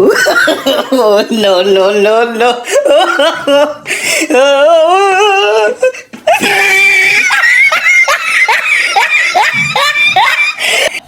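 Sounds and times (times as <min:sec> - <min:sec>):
person laughing: 0:05.3 - 0:11.0.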